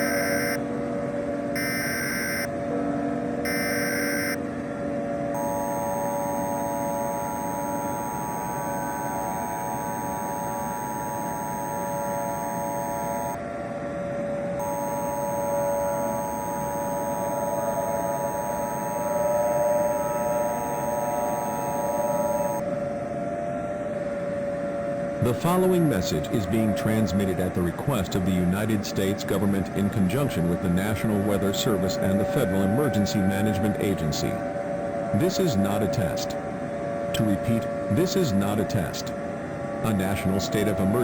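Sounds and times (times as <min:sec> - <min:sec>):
constant hum and hiss: 0:00.0 - 0:41.0
shrill two-note alert tone: 0:01.6 - 0:02.5, 0:03.4 - 0:04.4.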